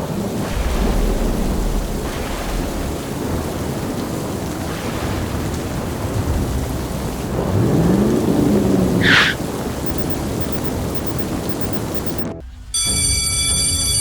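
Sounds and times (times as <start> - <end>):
low rumble of thunder: 0.0 - 9.9
heavy rain: 0.0 - 12.2.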